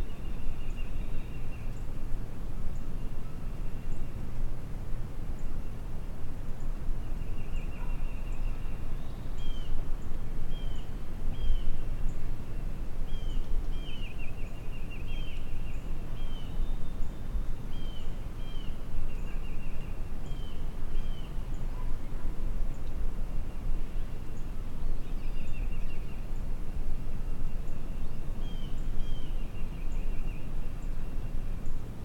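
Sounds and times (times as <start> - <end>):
wind rumble on microphone: 0.0 - 32.0
songbird calling: 10.5 - 22.0, 27.4 - 31.8.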